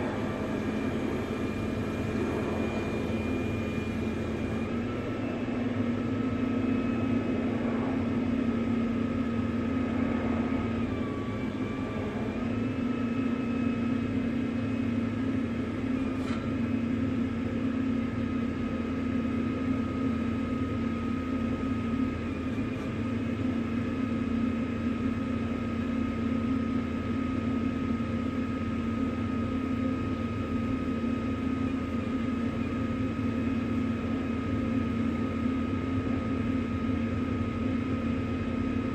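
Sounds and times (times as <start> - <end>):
hydraulic whine: 0.0 - 25.8
truck engine drone: 0.0 - 38.9.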